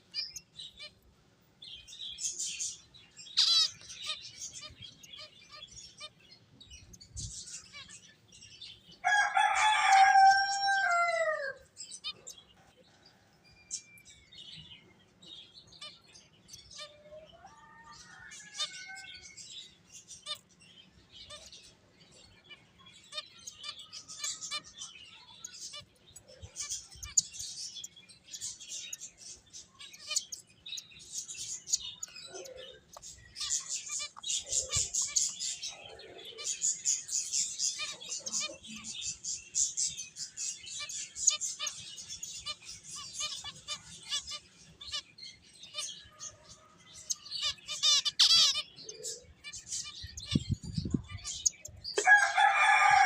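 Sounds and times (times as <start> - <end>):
finches chirping: 1.8 - 8.3, 18.0 - 46.4, 47.0 - 53.0
drawn-out falling bird call: 52.0 - 53.0.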